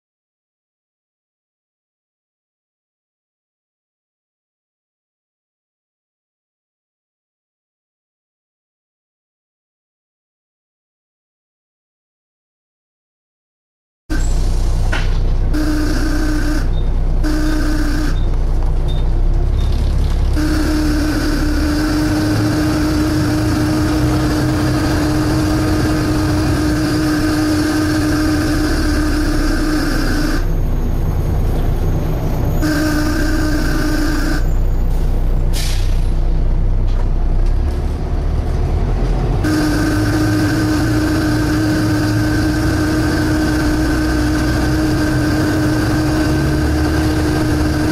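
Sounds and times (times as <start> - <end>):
bus engine rumbling: 14.1 - 47.9
droning suction noise: 15.5 - 18.2, 20.4 - 30.6, 32.6 - 34.6, 39.4 - 47.9.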